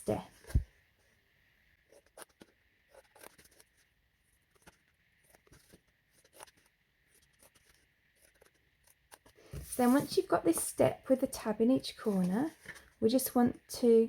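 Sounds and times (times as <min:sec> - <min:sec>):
scissors cutting cardstock: 0:01.9 - 0:03.8, 0:04.5 - 0:10.7
paper handling: 0:01.9 - 0:10.7.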